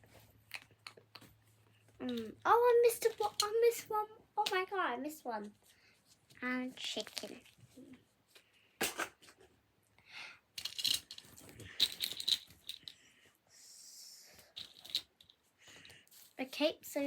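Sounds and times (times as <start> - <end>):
fidget toys clicking and clattering: 0.4 - 4.7, 6.7 - 7.6, 10.6 - 13.0, 14.3 - 16.5.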